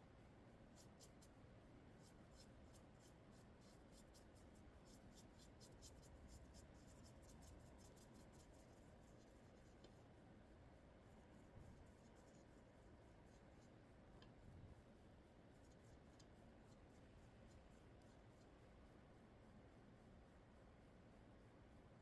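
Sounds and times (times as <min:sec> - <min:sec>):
scratchy ticks: 0:15.6 - 0:18.5.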